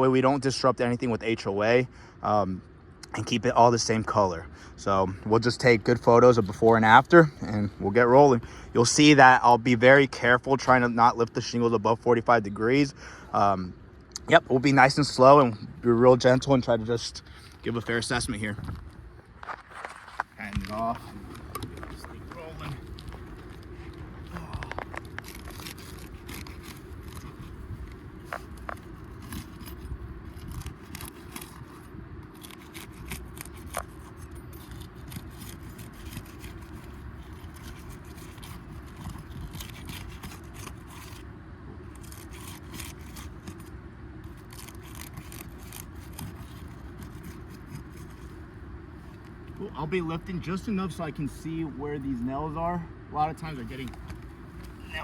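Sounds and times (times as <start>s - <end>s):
steady low rumble: 12.0s - 55.0s
shingles scraping and crackling: 17.3s - 41.2s.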